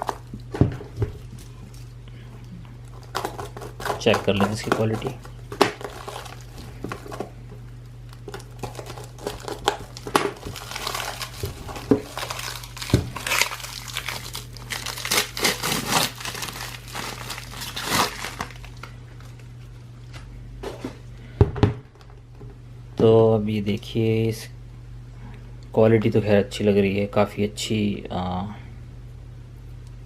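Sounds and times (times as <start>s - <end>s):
plastic packaging crinkling: 0.0s - 2.0s, 2.8s - 20.9s.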